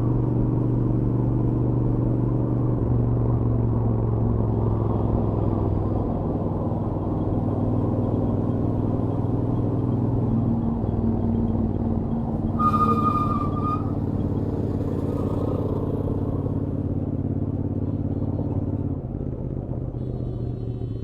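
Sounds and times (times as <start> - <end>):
motorcycle engine cruising: 4.4 - 21.0.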